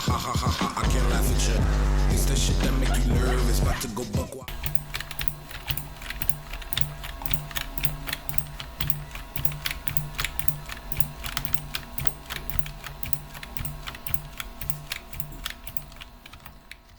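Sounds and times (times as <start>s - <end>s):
keyboard typing clicks: 4.5s - 16.9s.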